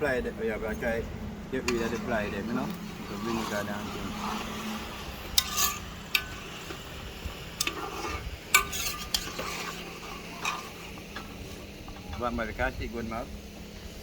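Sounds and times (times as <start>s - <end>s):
metal spoon clinking in pot: 5.3s - 6.8s, 7.5s - 11.6s.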